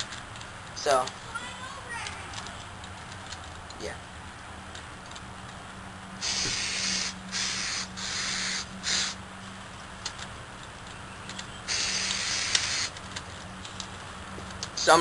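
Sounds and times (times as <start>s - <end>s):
aerosol can spraying: 6.2s - 9.1s, 11.7s - 13.0s.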